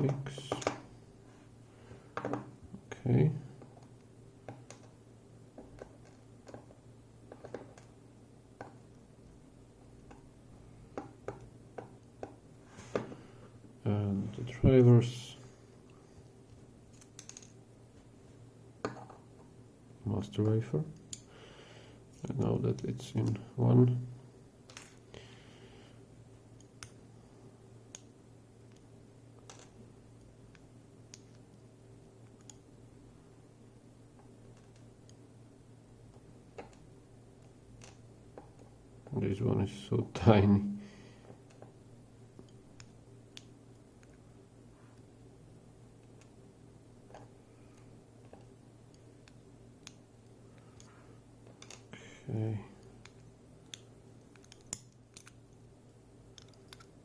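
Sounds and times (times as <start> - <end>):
low steady hum: 0.0 - 57.0
small metal parts clicking: 16.9 - 17.6, 51.5 - 51.9, 53.0 - 55.6, 56.3 - 57.0.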